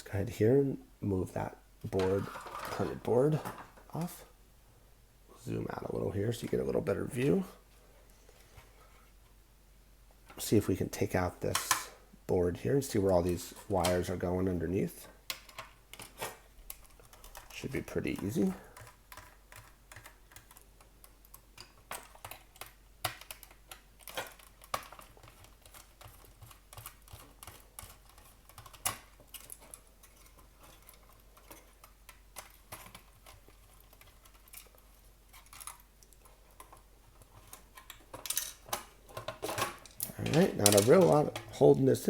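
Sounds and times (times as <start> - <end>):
clicks of small parts handled: 21.3 - 41.6.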